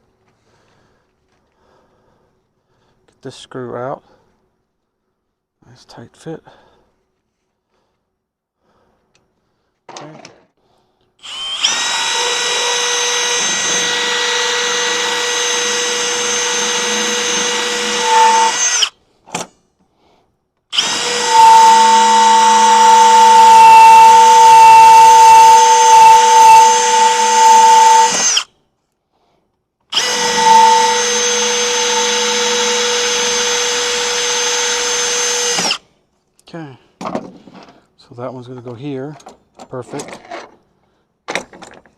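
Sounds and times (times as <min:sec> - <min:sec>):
power drill running: 0:11.2 - 0:18.9, 0:20.7 - 0:28.5, 0:29.9 - 0:35.8.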